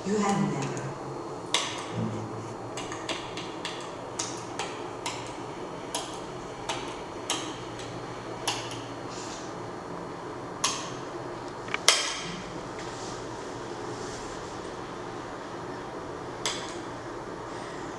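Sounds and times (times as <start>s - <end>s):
faint low hum: 0.0s - 3.1s.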